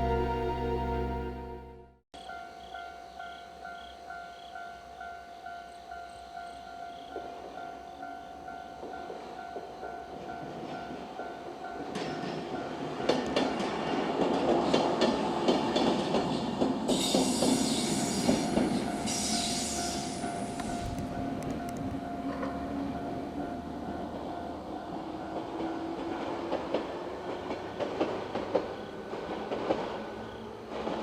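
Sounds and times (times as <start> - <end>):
train wheels clattering over rails: 11.7 - 31.0.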